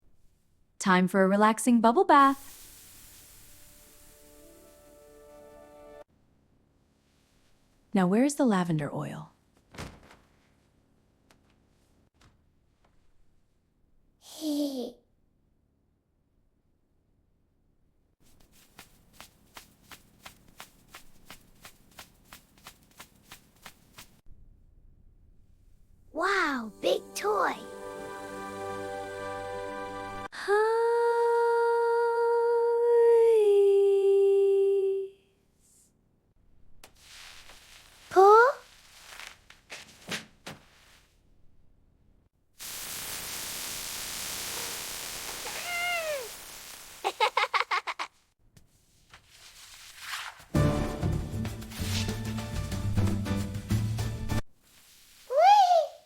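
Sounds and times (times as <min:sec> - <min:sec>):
steady hiss: 0:02.3 - 0:05.8, 0:18.3 - 0:24.2, 0:42.6 - 0:47.6, 0:54.6 - 0:56.0
cat meowing: 0:45.4 - 0:46.3.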